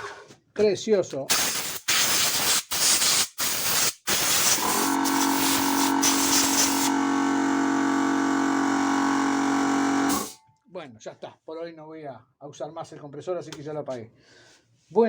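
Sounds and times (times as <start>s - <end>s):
compressed air blow gun hissing: 1.3s - 6.9s, 10.1s - 10.4s
air compressor motor humming: 1.3s - 10.4s.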